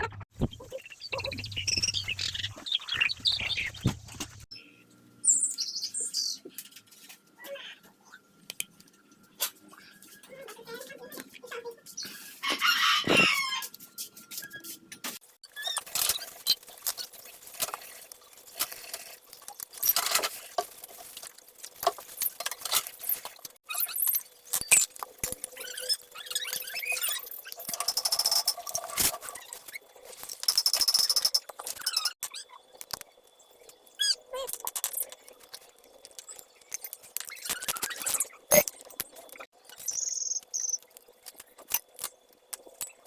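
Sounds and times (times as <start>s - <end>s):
rooster crowing: 12.4s - 13.7s.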